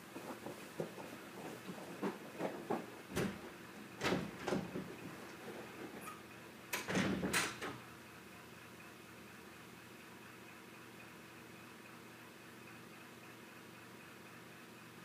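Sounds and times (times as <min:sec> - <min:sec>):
footsteps and small knocks: 0:00.0 - 0:06.2
door shutting clatter: 0:03.1 - 0:05.4, 0:06.0 - 0:07.8.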